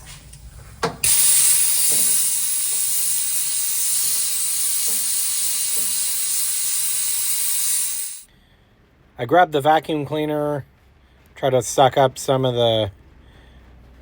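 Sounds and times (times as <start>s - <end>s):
sandblaster hissing: 1.0s - 8.3s.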